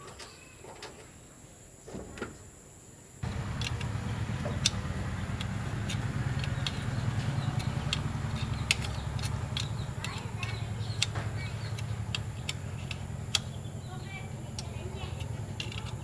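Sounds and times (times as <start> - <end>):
motor humming: 3.2 - 16.0
sharp clicks: 3.2 - 16.0.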